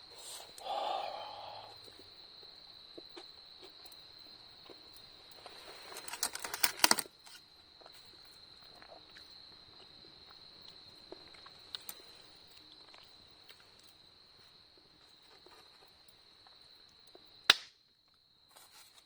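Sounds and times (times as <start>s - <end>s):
crickets singing: 0.0s - 18.8s.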